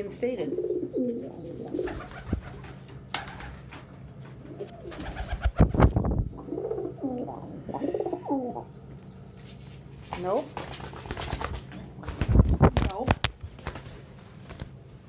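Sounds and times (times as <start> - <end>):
pigeons cooing: 0.2 - 9.4.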